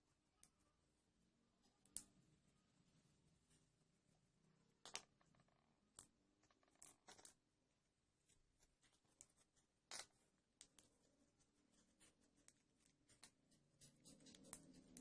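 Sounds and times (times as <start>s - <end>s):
faint clicks and scrapes: 4.8s - 7.4s, 8.2s - 15.0s.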